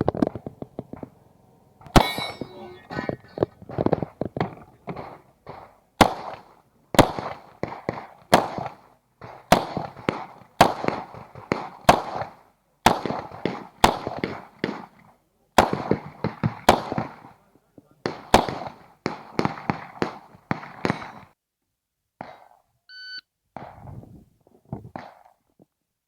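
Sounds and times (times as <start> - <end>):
pistol firing single shots: 4.9 - 14.9, 15.6 - 17.4, 18.0 - 21.3.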